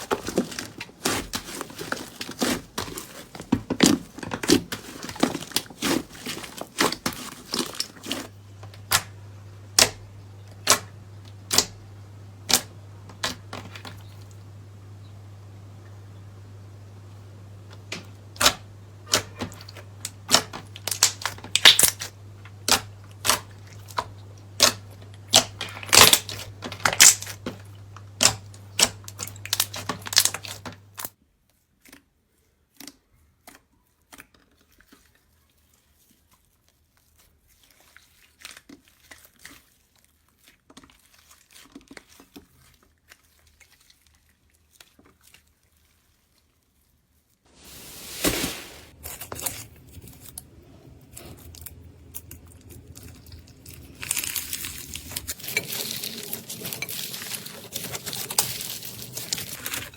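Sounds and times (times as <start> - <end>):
low steady hum: 0.0 - 31.0, 47.6 - 59.9.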